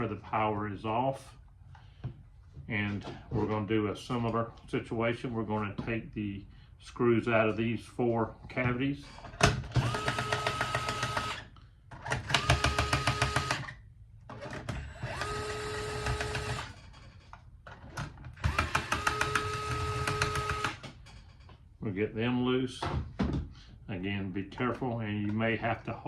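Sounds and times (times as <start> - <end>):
electric screwdriver motor whine: 9.8 - 11.5, 12.3 - 13.7, 14.8 - 16.8, 18.4 - 20.8.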